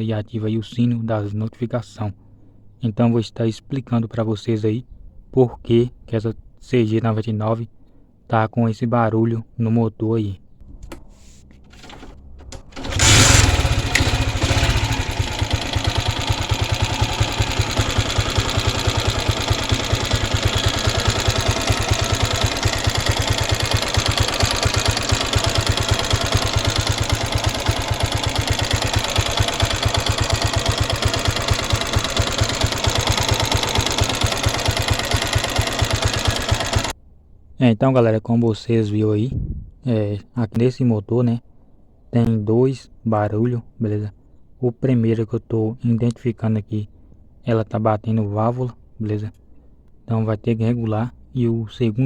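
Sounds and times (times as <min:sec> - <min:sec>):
motorcycle engine starting and idling: 0:10.6 - 0:37.0.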